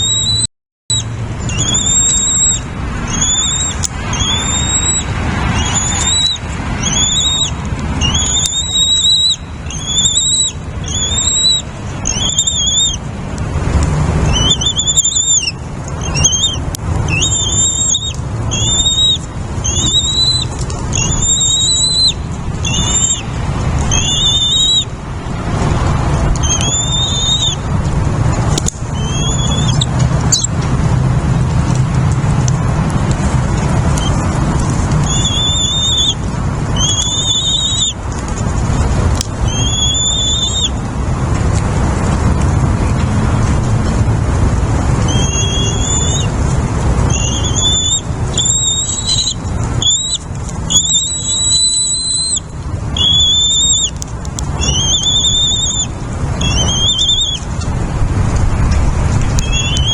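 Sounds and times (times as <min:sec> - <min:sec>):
small bird calling: 0:00.0 - 0:13.0, 0:14.3 - 0:23.3, 0:23.9 - 0:24.9, 0:26.4 - 0:27.7, 0:35.0 - 0:36.2, 0:36.8 - 0:38.0, 0:47.1 - 0:52.4, 0:53.0 - 0:54.0, 0:54.6 - 0:57.4.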